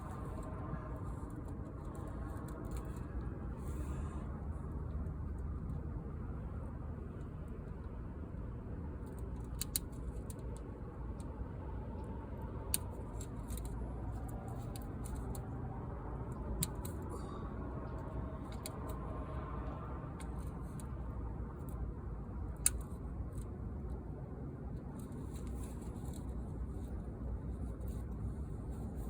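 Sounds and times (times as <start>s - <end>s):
sharp clicks and snips: 8.9s - 15.6s, 16.2s - 17.1s, 17.8s - 21.0s, 22.5s - 24.0s.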